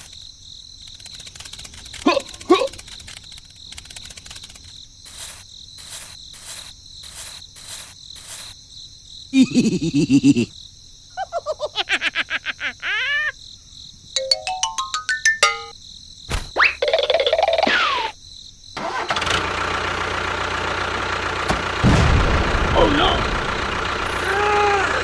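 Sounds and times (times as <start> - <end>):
high insect chirring: 0.0 - 10.7
rising stepped tones: 14.2 - 15.7.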